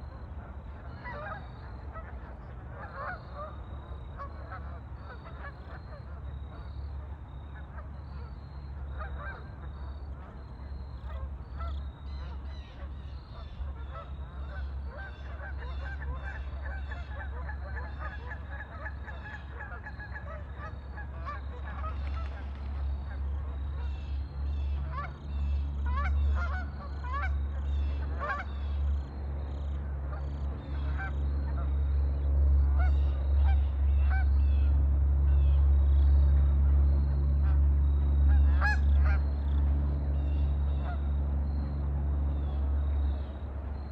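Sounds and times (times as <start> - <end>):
waterfowl honking and quacking: 0.0 - 43.2.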